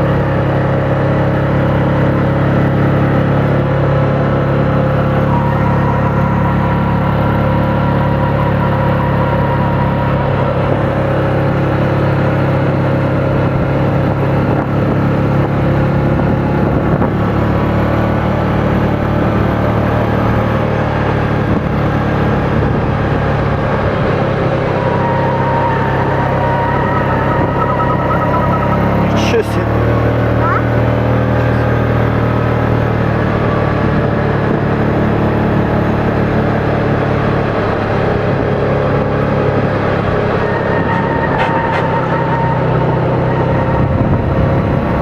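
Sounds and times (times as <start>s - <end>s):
small petrol engine droning: 0.0s - 45.0s
thin whine: 3.0s - 12.5s.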